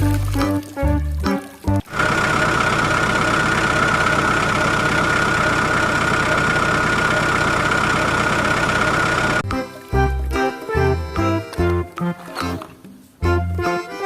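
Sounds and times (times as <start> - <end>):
engine running with high whine: 1.9 - 9.5.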